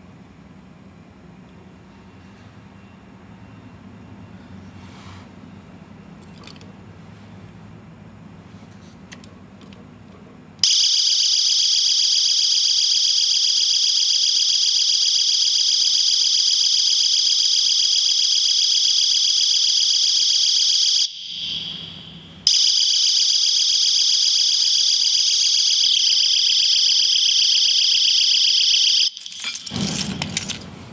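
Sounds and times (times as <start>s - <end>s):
high-pitched electronic alarm: 10.6s - 29.3s.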